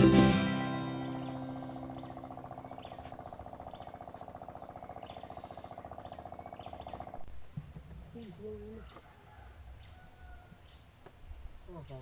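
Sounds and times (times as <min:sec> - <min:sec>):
small engine pulsing: 0:01.1 - 0:07.2
faint chirps: 0:01.1 - 0:07.3.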